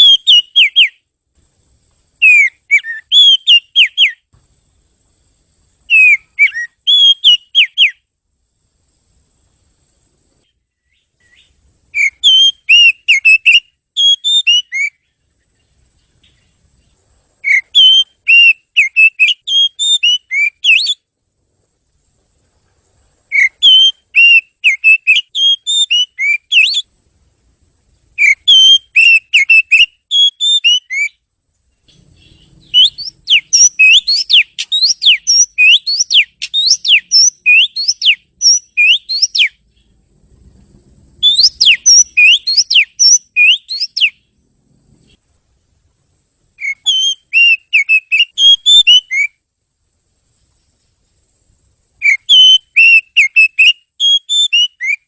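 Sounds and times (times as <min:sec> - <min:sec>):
bird singing whistled notes: 0:00.0 - 0:01.1, 0:02.2 - 0:04.3, 0:05.8 - 0:08.1, 0:10.4 - 0:16.7, 0:17.4 - 0:21.1, 0:23.3 - 0:26.9, 0:28.1 - 0:40.0, 0:41.2 - 0:44.4, 0:46.6 - 0:49.4, 0:52.0 - 0:55.0.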